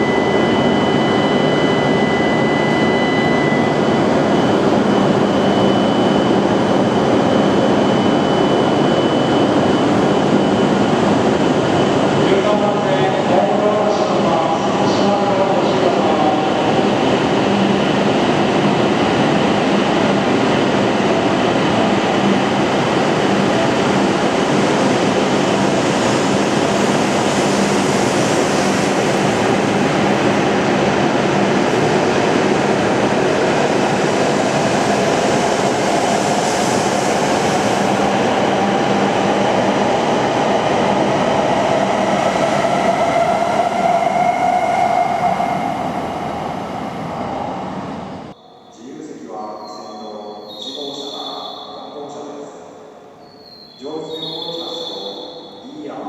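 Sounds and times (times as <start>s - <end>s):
train rushing through station: 0.0s - 56.0s.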